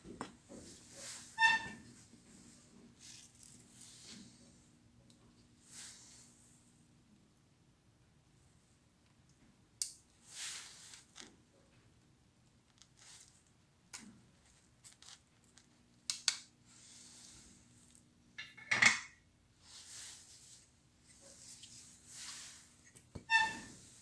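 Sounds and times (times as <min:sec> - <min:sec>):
faint steady hum: 0:00.0 - 0:24.0
short hissy rustles: 0:19.6 - 0:24.0.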